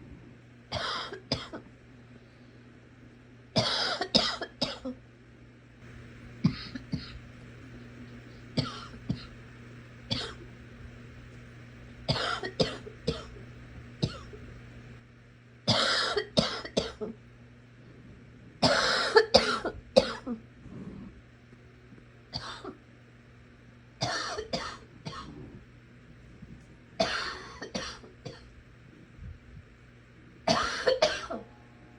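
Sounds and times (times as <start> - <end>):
person coughing: 0.7 - 1.6, 3.6 - 5.0, 6.4 - 7.2, 8.6 - 9.4, 10.1 - 10.4, 12.1 - 13.4, 14.0 - 14.4, 15.7 - 17.2, 18.6 - 20.4, 22.4 - 22.8, 24.0 - 25.3, 27.0 - 28.5, 30.5 - 31.5.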